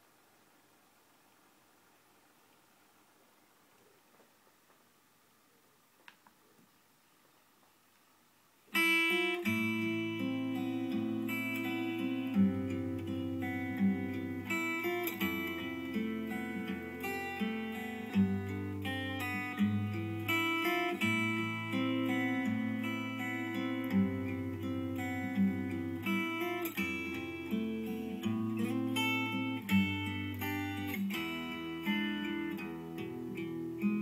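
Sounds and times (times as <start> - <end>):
strummed acoustic guitar: 8.7 - 34.0.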